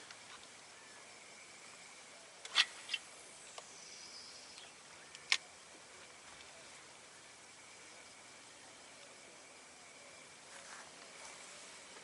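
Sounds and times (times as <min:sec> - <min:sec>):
faint steady hiss: 0:00.0 - 0:12.0
sharp clicks: 0:04.6 - 0:05.4.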